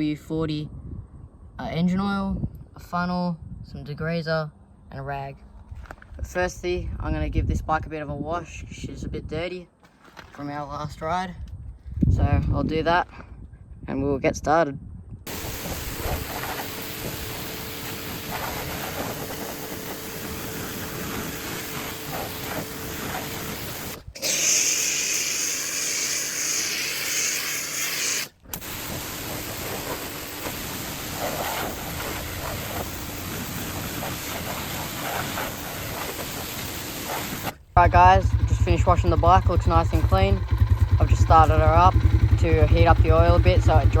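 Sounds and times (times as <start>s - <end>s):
water spray hissing: 15.3s - 37.6s.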